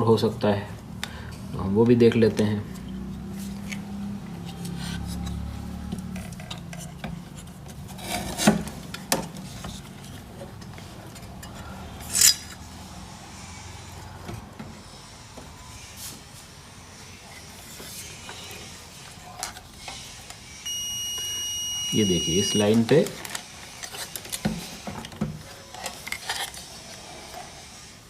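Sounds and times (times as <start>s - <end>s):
metal tools clinking: 11.1s - 12.6s.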